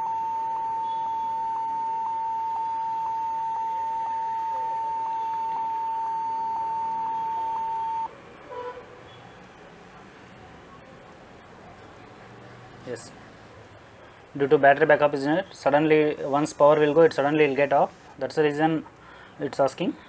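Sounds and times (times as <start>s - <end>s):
laptop steady beep tone: 0.0s - 9.6s.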